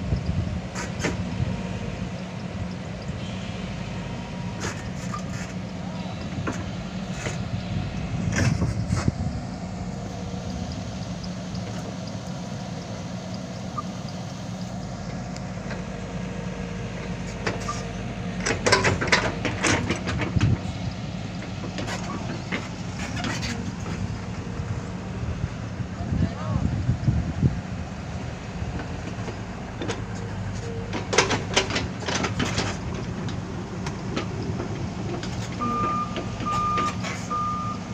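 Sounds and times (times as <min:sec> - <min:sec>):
excavator diesel engine running: 0:00.0 - 0:37.9.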